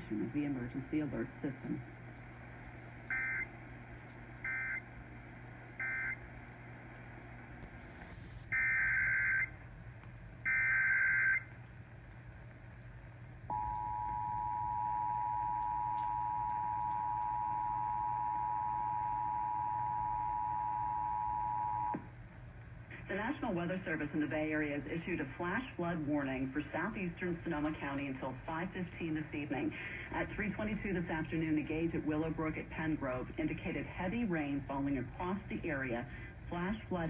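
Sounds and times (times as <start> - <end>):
low hum: 0.0 - 37.0
two-tone attention signal: 13.5 - 22.0.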